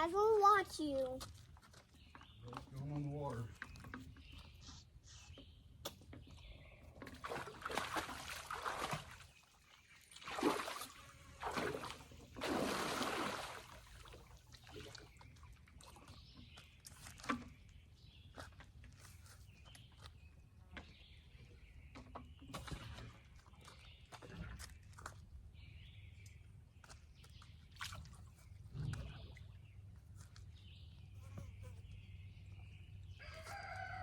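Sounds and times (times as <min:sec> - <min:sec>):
water splashing and sloshing: 0:05.7 - 0:31.0.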